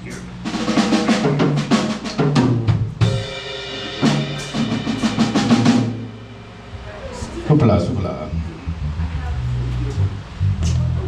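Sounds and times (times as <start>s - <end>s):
drum kit playing: 0.0s - 11.0s
sustained low bass notes: 2.6s - 11.0s.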